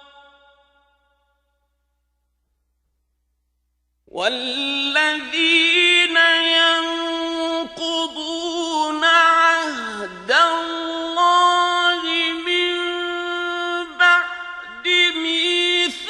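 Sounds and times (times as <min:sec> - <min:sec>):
man reciting melodically: 0:04.1 - 0:16.0.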